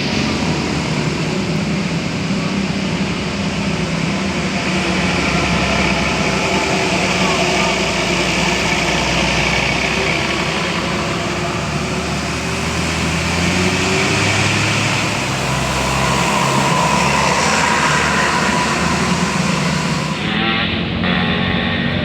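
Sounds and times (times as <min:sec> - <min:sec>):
large vehicle engine running: 0:00.0 - 0:22.0
road traffic noise: 0:00.0 - 0:22.0.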